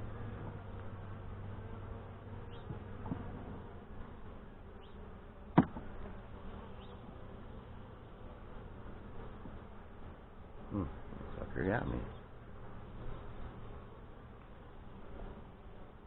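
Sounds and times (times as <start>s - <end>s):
bees buzzing: 0.0s - 16.0s
sharp click or knock: 5.6s - 5.8s.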